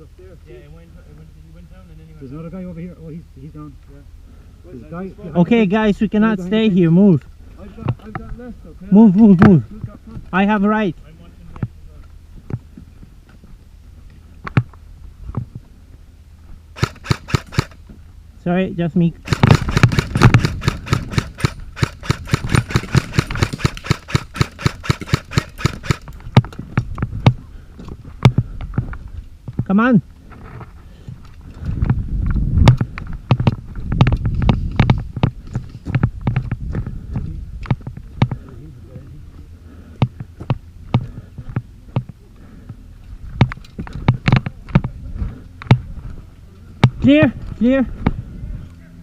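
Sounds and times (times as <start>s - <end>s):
steady low rumble: 7.2s - 49.0s
airsoft rifles firing: 16.8s - 17.8s, 19.2s - 26.2s
sharp clicks and knocks: 19.3s - 27.4s.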